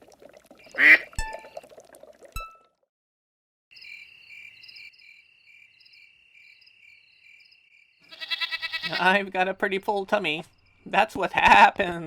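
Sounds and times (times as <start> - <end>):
crickets chirping: 3.7 - 8.2, 10.4 - 10.9.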